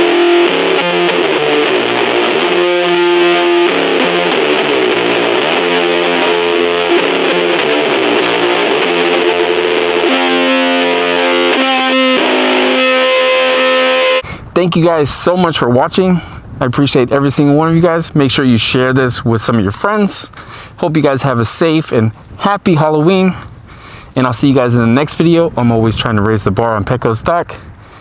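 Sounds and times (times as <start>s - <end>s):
distorted electric guitar: 0.0s - 14.2s.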